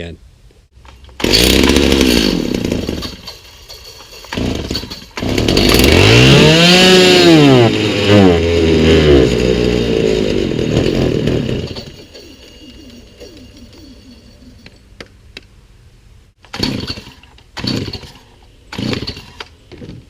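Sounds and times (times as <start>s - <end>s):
chainsaw engine revving: 1.2s - 3.3s, 4.3s - 12.0s, 16.5s - 19.5s.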